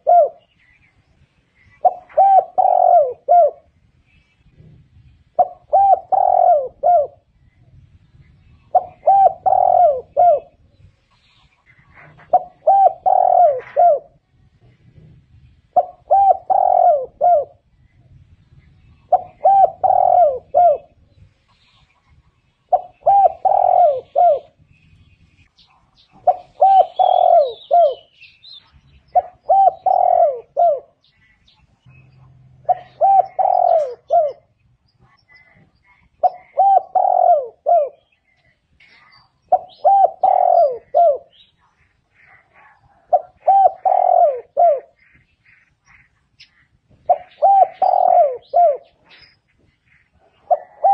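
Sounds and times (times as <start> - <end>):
dove cooing: 0.0 - 0.6, 1.6 - 3.8, 4.4 - 7.3, 8.3 - 10.8, 11.6 - 17.7, 18.9 - 21.2, 22.6 - 24.7, 25.9 - 28.2, 29.0 - 38.5, 39.4 - 46.1, 46.9 - 49.3, 50.1 - 50.9
small birds chirping: 0.0 - 50.9.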